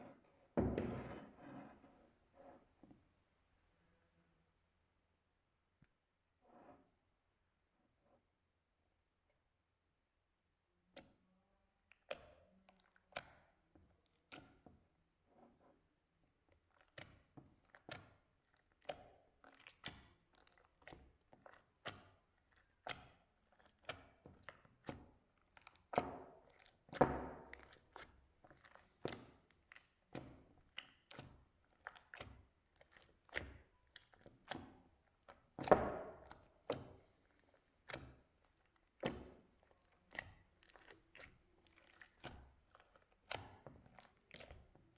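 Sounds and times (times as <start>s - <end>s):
slime squelches: 10.9s - 15.2s, 15.8s - 44.9s.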